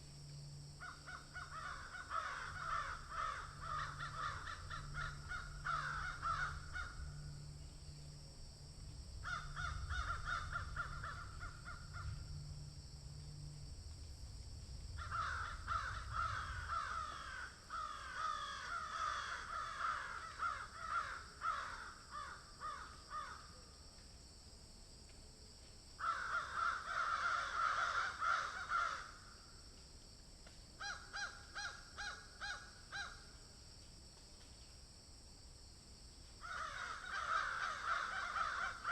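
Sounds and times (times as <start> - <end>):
crows cawing: 0.8 - 7.3, 9.2 - 12.3, 15.0 - 23.6, 26.0 - 29.4, 30.8 - 33.3, 36.4 - 38.9.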